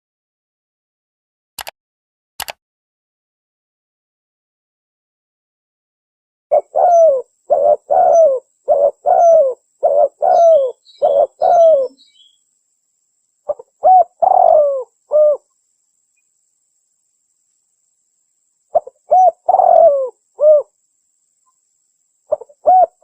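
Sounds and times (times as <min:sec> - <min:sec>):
dove cooing: 0:06.5 - 0:12.4, 0:13.5 - 0:15.5, 0:18.7 - 0:20.7, 0:22.3 - 0:23.0
small bird chirping: 0:06.5 - 0:17.7, 0:18.6 - 0:23.0.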